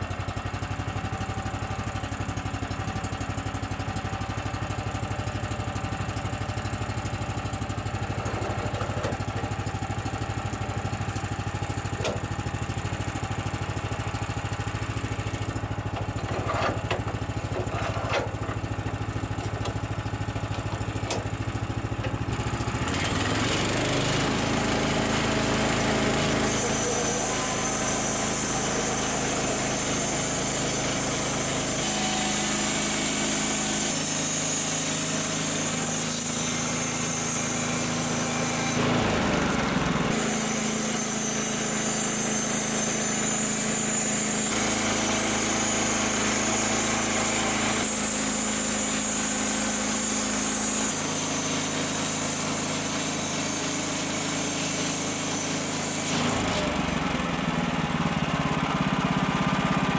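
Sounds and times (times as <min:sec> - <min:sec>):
bandsaw mill petrol engine: 0:00.0 - 0:59.9
band blade cutting wood: 0:25.8 - 0:39.1, 0:40.1 - 0:56.8.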